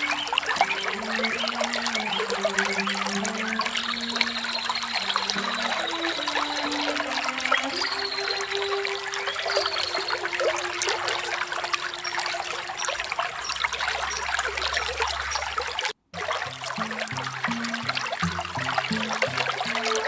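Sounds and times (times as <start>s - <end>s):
low musical notes: 0.0s - 14.5s
bird chirp: 0.0s - 15.7s
small waterfall trickling: 0.0s - 20.0s.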